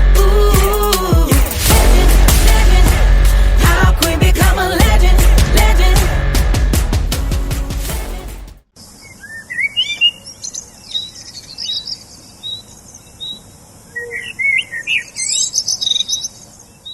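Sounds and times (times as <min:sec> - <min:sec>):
background music: 0:00.0 - 0:08.6
small birds chirping: 0:08.8 - 0:16.9.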